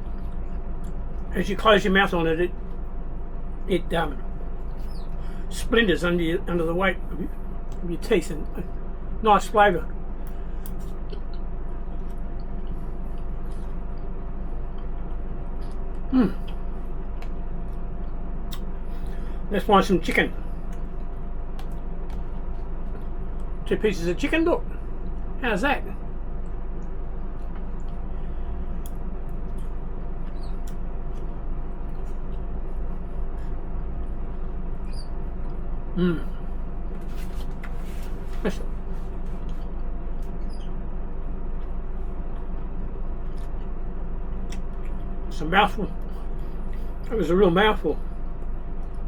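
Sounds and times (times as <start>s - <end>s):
man chewing food: 0.0s - 1.3s, 10.2s - 19.2s, 20.4s - 23.6s, 26.3s - 45.3s, 46.0s - 47.1s
low background hum: 0.0s - 49.0s
man humming mm: 16.1s - 16.6s, 36.0s - 36.5s.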